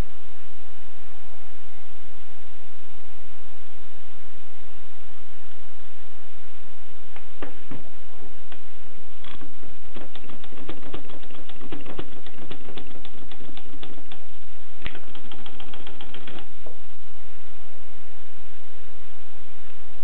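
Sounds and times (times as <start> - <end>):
steady background hiss: 0.0 - 20.0
typewriter keys clicking: 9.3 - 14.2, 14.8 - 16.5.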